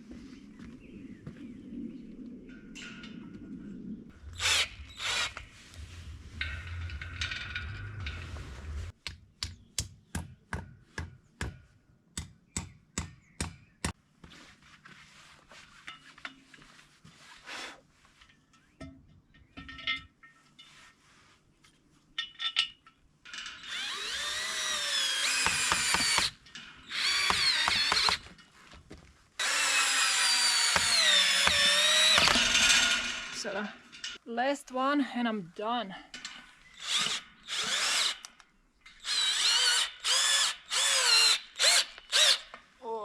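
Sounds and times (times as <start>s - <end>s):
power drill whining: 4.4s - 5.5s, 23.6s - 28.2s, 29.4s - 33.1s, 36.8s - 42.6s.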